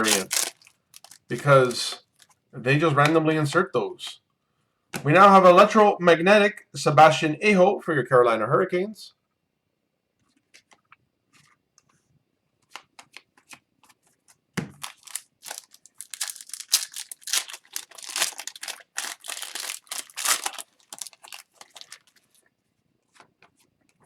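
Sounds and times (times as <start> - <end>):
foil wrapper tearing and crinkling: 0.0 - 2.3, 14.8 - 22.3.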